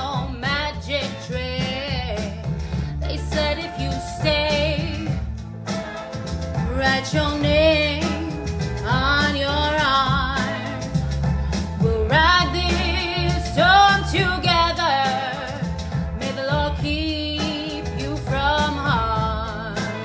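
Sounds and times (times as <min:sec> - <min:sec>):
woman singing with vibrato: 0:00.0 - 0:05.4, 0:06.6 - 0:20.0
pop backing beat: 0:00.0 - 0:20.0.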